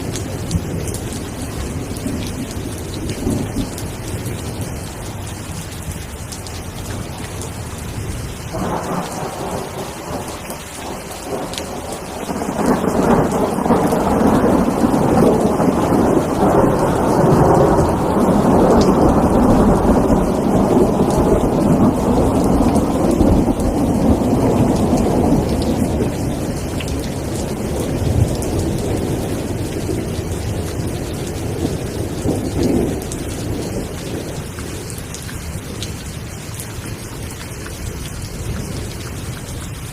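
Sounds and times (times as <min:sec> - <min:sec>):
steady rain: 0:00.0 - 0:39.9
rolling thunder: 0:08.1 - 0:34.8.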